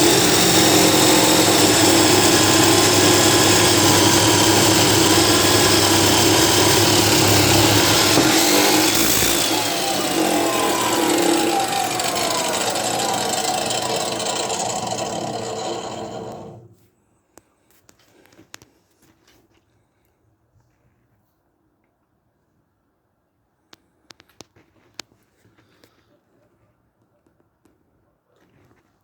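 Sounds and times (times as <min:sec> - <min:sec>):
chop saw grinding metal: 0:00.0 - 0:16.7.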